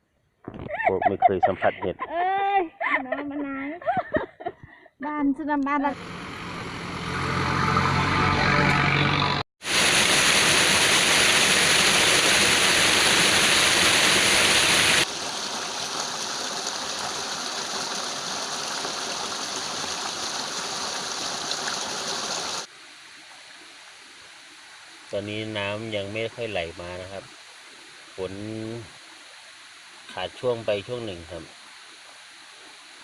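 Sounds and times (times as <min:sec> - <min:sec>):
engine-like hum: 0:05.9 - 0:09.4
waterfall rushing: 0:09.6 - 0:22.7.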